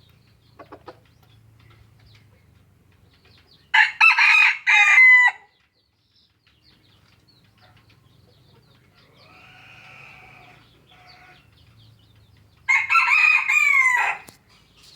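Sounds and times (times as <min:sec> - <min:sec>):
rooster crowing: 0:03.8 - 0:05.4, 0:09.2 - 0:11.4, 0:12.7 - 0:14.3.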